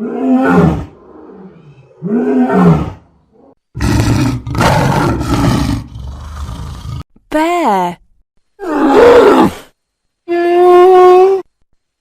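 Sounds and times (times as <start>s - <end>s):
lion roaring: 0.0s - 7.0s.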